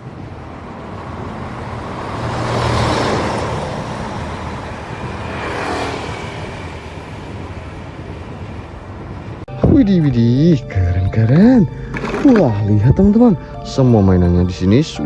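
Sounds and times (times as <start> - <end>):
road vehicles passing: 0.0 - 9.4.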